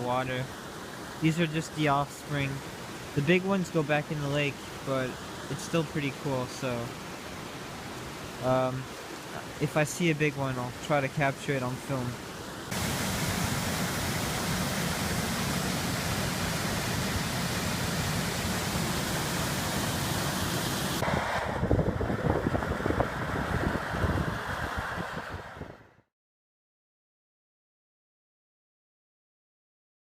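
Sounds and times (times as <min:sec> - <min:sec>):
stream water rushing: 0:00.0 - 0:21.1.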